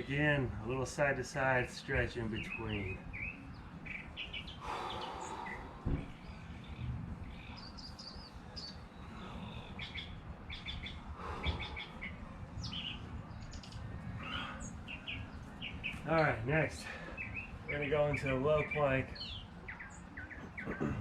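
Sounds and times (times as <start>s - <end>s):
songbirds chirping: 0.0s - 21.0s
soft thump: 5.8s - 6.2s.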